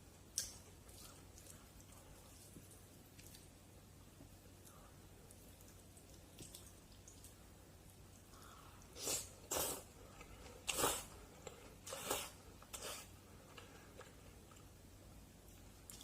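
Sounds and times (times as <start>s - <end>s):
wet noodle slurping: 10.6s - 11.2s, 11.8s - 13.1s.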